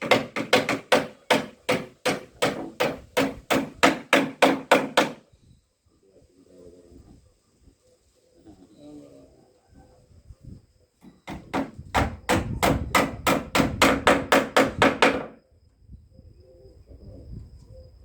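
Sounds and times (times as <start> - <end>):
hammer striking wood: 0.0 - 5.2, 11.0 - 15.4.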